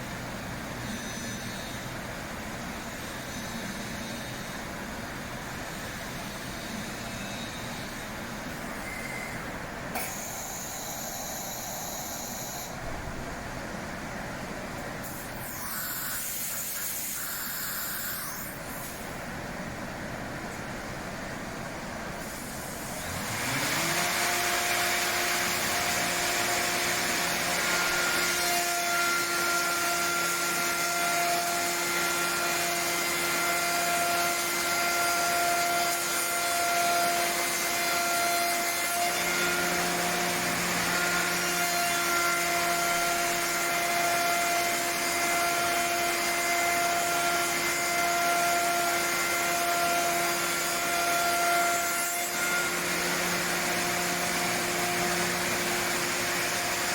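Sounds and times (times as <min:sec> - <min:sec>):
spindle high whine: 0:00.8 - 0:19.3.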